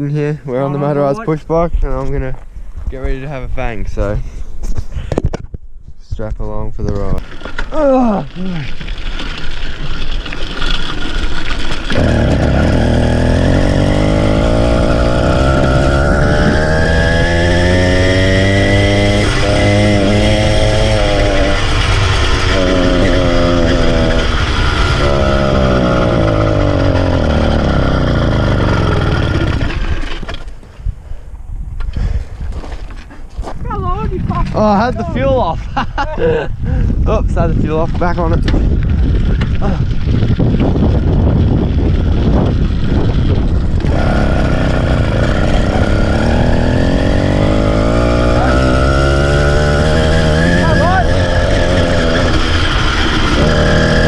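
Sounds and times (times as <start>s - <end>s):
wind: 0.0s - 54.0s
small bicycle engine running: 7.2s - 16.6s, 17.2s - 30.4s, 38.2s - 54.0s.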